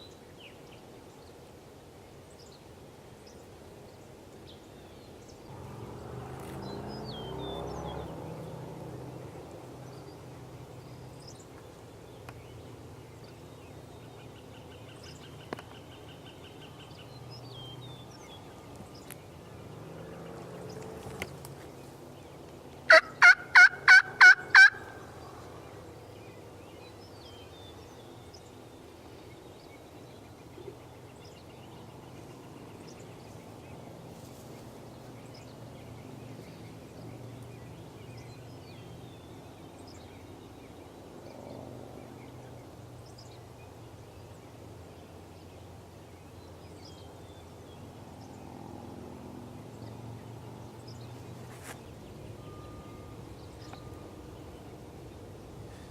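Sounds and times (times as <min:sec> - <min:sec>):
turkey call yelps: 0:22.9 - 0:25.0
faint bird chirps: 0:50.8 - 0:55.9.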